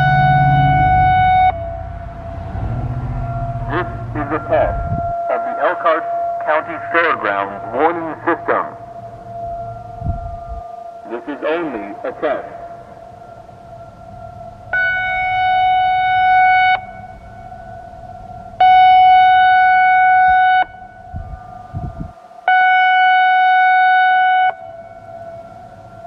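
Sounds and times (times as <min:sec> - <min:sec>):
warning siren tone blasts: 0:00.0 - 0:26.0.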